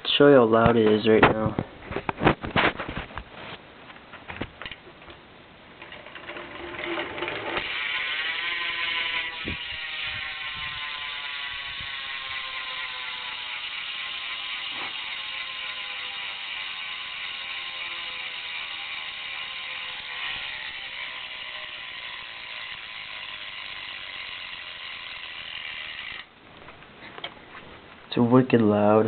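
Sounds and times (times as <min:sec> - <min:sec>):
bike handling knocks and rattles: 0:03.9 - 0:05.2
bicycle hub buzzing freewheel: 0:05.8 - 0:26.4.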